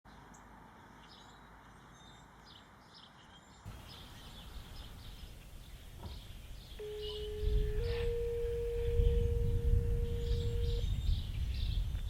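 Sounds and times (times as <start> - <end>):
small birds chirping: 0.1 - 12.0
low background rumble: 6.8 - 12.0.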